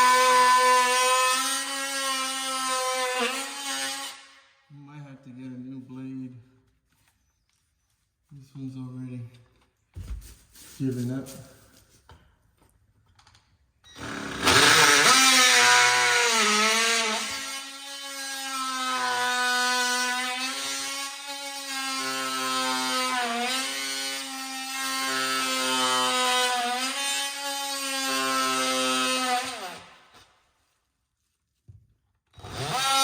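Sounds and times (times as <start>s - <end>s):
power saw cutting: 0.0s - 4.4s, 14.0s - 30.3s, 32.4s - 33.0s.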